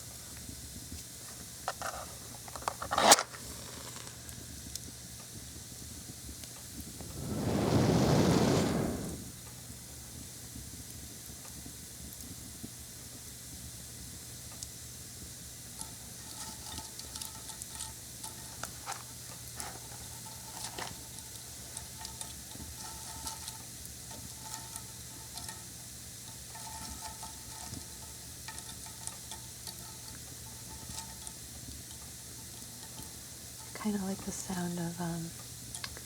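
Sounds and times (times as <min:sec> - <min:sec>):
fire crackling and hissing: 0:00.1 - 0:13.3
faint thin whistle: 0:07.0 - 0:09.3.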